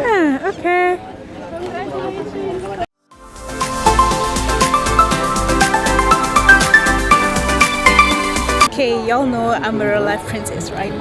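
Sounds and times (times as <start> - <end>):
electronic background music: 3.2 - 8.7.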